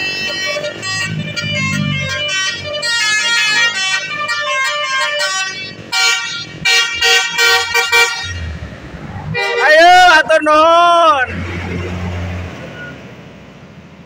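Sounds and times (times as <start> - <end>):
bus musical horn tune: 0.0 - 8.6, 9.3 - 10.1
short horn blasts: 0.0 - 8.6, 9.3 - 10.2.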